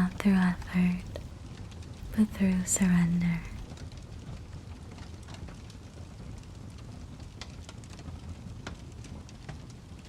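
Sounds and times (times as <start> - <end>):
low steady rumble: 0.0 - 3.7
fire crackling and popping: 0.0 - 10.0.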